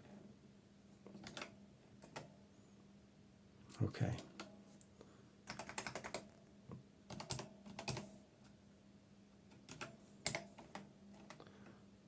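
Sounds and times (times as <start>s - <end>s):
faint steady hum: 0.0s - 12.0s
typing on computer keyboard: 1.2s - 2.3s, 5.4s - 6.3s, 7.1s - 8.1s, 9.5s - 11.5s.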